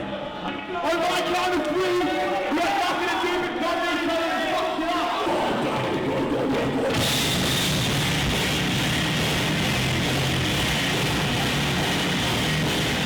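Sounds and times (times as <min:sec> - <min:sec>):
distorted rock music: 0:05.3 - 0:13.0.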